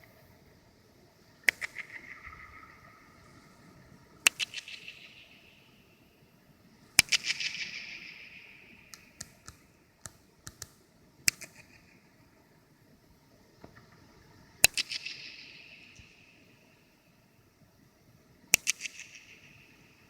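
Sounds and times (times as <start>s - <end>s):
small clicks: 8.8s - 12.0s.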